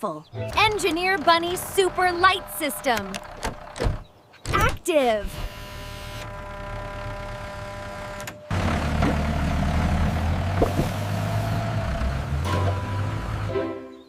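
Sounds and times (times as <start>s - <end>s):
tractor engine idling: 0.3s - 4.2s, 5.6s - 13.6s.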